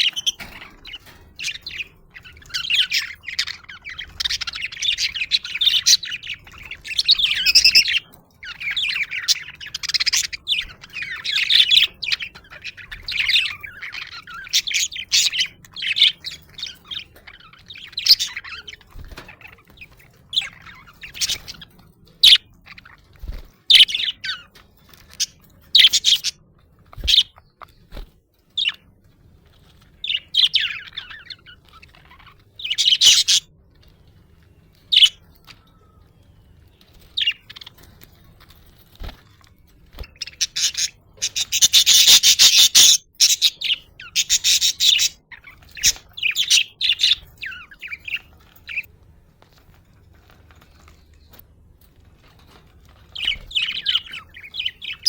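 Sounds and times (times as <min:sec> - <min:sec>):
budgerigars chirping: 0:00.0 - 0:28.0, 0:28.6 - 0:28.8, 0:29.7 - 0:33.8, 0:34.9 - 0:35.7, 0:36.5 - 0:38.2, 0:39.0 - 0:48.9, 0:52.3 - 0:55.0.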